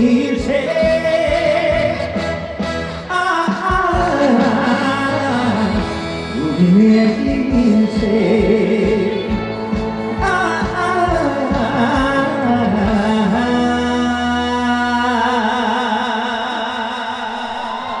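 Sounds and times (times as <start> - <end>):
trot music with drum beat: 0.0 - 13.4.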